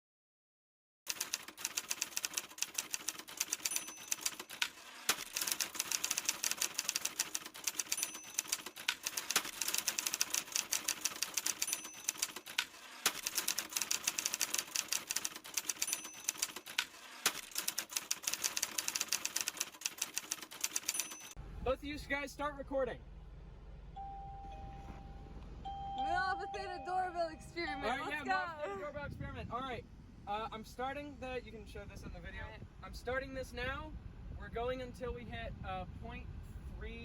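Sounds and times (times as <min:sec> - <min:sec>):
rapid clicking like typing: 0:01.1 - 0:21.4
short high beep: 0:24.0 - 0:28.2.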